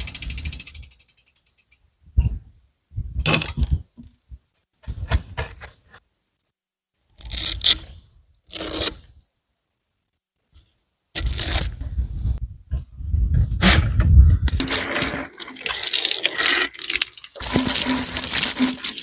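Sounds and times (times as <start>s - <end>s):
bicycle freewheel ticking: 0.0s - 1.7s.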